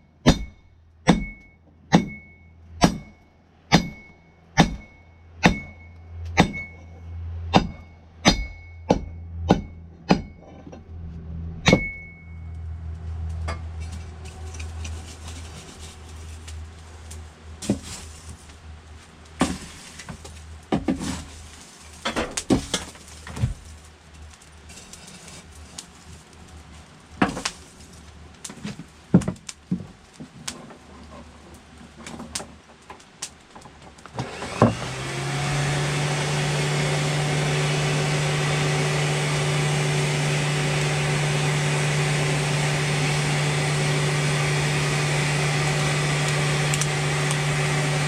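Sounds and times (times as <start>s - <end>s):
low hum: 0.0s - 21.4s
hammer striking steel on anvil: 0.2s - 10.7s, 11.6s - 12.6s.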